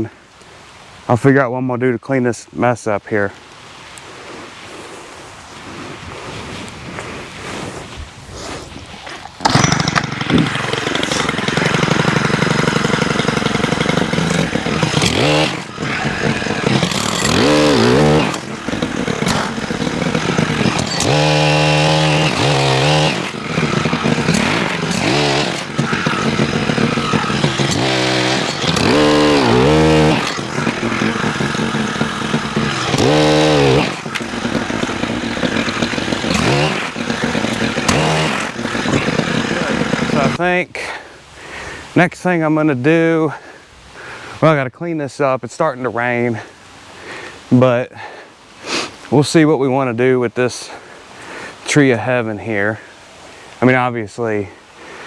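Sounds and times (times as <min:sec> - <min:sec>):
pole saw engine revving: 0:09.4 - 0:40.5.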